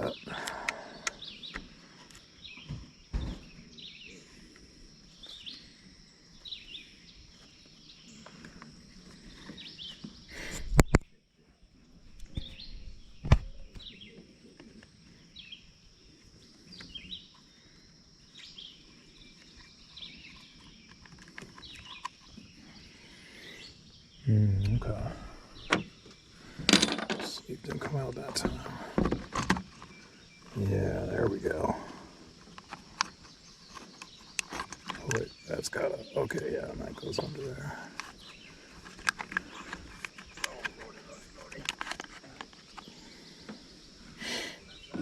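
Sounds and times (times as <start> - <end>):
birds chirping: 0.0 - 45.0
clicks and knocks on plastic parts: 26.6 - 27.3.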